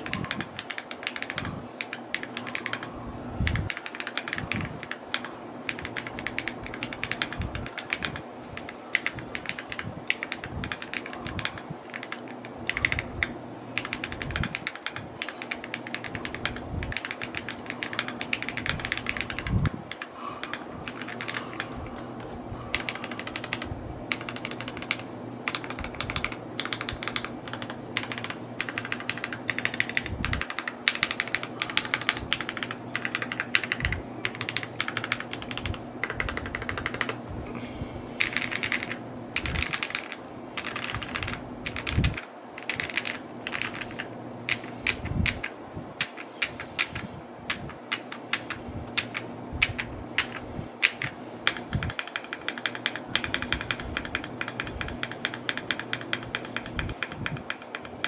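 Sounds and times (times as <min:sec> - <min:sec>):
mechanical keyboard typing: 0:00.0 - 0:37.2, 0:38.2 - 0:58.0
faint low hum: 0:00.0 - 0:58.0.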